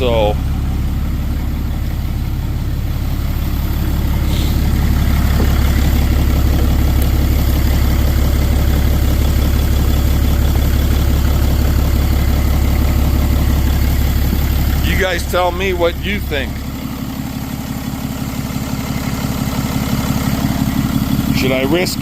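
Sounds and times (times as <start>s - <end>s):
diesel engine idling: 0.0s - 22.0s.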